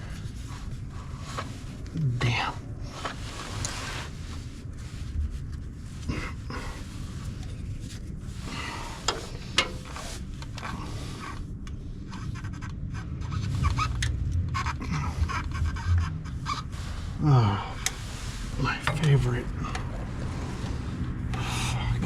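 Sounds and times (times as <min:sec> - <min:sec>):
man breathing hard: 0:08.4 - 0:09.5, 0:19.5 - 0:22.0
tools scraping metal: 0:18.6 - 0:21.4.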